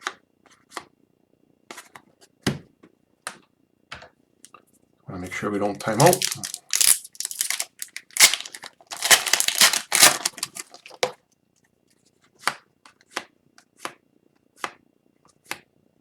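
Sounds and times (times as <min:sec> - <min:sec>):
wrapper and card rustling: 0:05.8 - 0:11.1.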